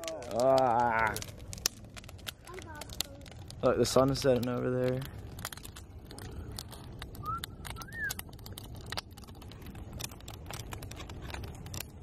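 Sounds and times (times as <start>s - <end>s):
bonfire crackling: 0.0s - 12.0s.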